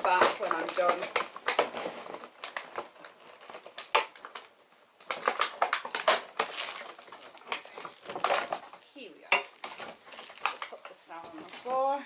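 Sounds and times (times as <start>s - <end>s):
plastic and cardboard packaging crinkling: 0.0s - 12.0s.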